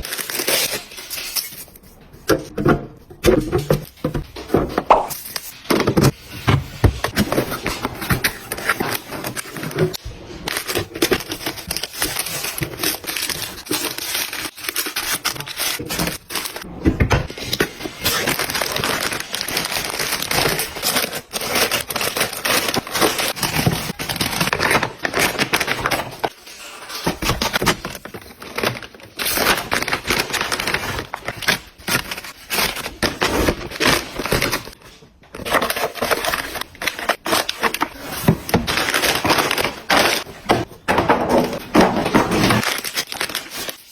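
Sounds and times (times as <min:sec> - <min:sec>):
packaging crinkling and rustling: 0:00.0 - 0:02.4, 0:03.4 - 0:43.9.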